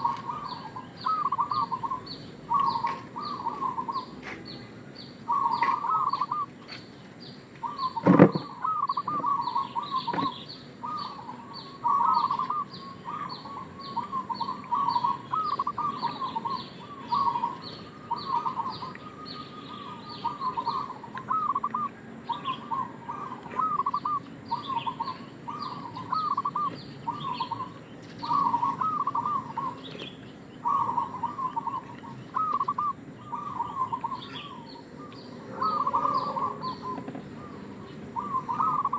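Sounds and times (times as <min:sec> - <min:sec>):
dove rolling coo: 0:00.0 - 0:04.2, 0:05.3 - 0:06.7, 0:07.6 - 0:38.9
small bird high chirps: 0:00.0 - 0:38.9.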